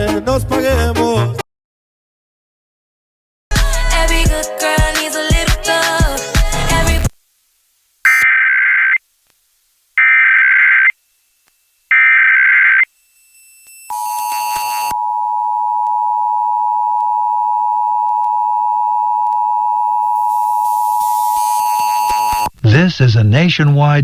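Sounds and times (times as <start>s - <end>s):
data tone bursts: 11.9s - 15.0s, 19.8s - 22.8s.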